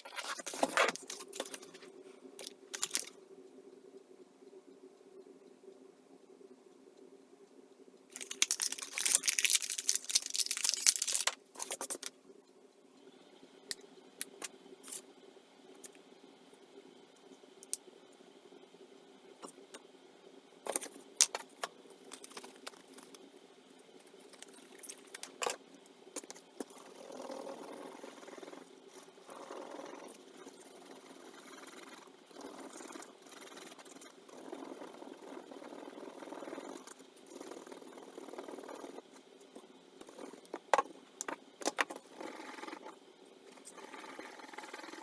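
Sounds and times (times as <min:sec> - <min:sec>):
small objects rustling and clattering: 0:02.4 - 0:03.1, 0:08.1 - 0:12.1.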